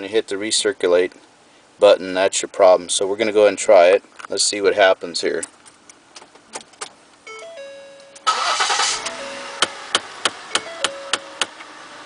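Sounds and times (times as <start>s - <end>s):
dashboard chime: 7.3s - 9.8s, 10.5s - 11.5s
car engine starting: 8.0s - 12.0s.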